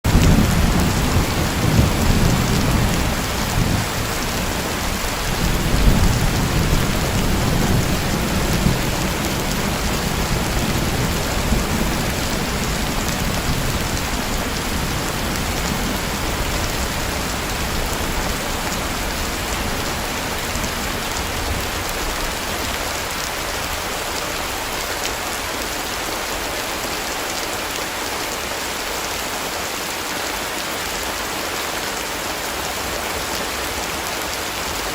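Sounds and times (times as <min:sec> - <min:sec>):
heavy rain falling: 0:00.0 - 0:34.9
low rolling thunder: 0:00.1 - 0:23.8.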